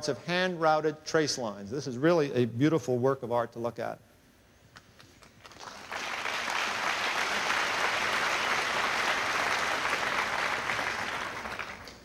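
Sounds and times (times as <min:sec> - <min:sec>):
audience applauding: 0:05.4 - 0:12.0.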